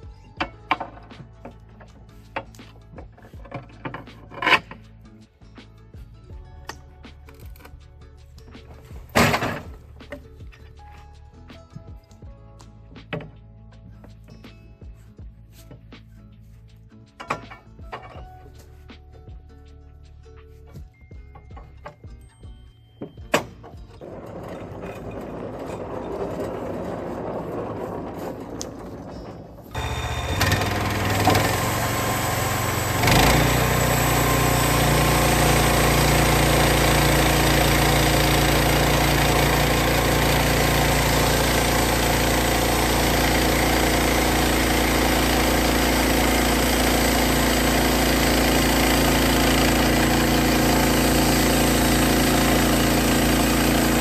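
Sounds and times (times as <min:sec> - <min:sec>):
gas engine running: 0:24.0 - 0:54.0.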